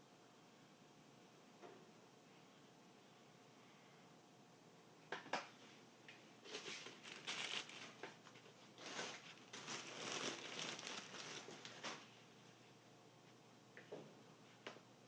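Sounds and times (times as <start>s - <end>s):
crinkly rustling and scraping: 6.4s - 12.7s.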